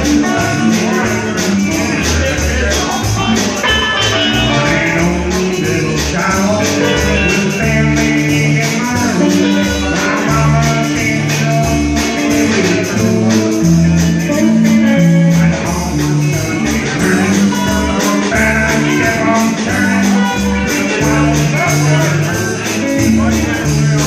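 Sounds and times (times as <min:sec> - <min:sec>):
country-rock music: 0:00.0 - 0:24.0.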